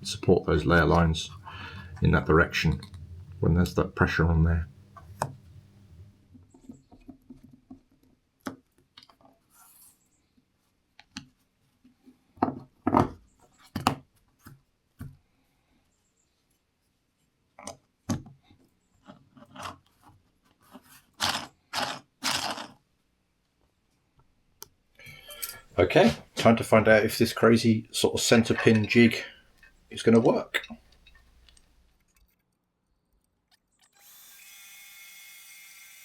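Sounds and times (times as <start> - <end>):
parts scraping clicking and knocking: 28.2 - 34.0.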